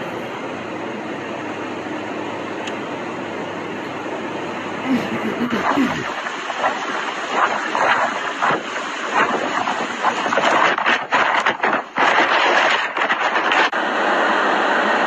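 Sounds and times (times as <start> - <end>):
wind buffeting a microphone: 5.3 - 13.8.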